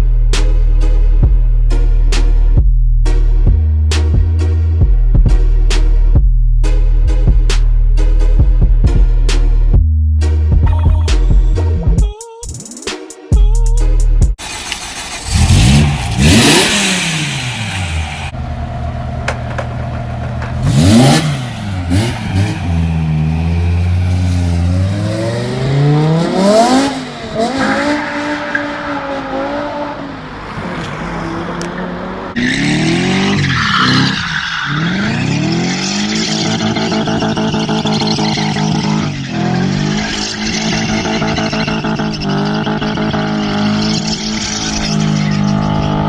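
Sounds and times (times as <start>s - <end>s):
car engines revving hard: 14.4s - 46.0s.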